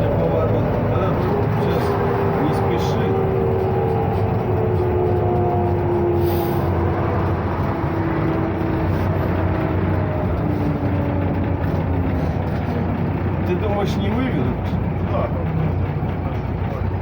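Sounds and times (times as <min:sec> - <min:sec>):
bus diesel engine slowing: 0:00.0 - 0:17.0.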